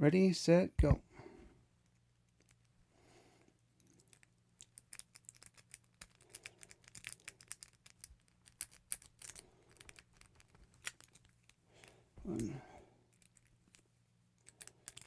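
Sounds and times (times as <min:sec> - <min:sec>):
lock pick clicking and scratching: 0:04.0 - 0:11.9, 0:13.1 - 0:13.8, 0:14.4 - 0:15.0.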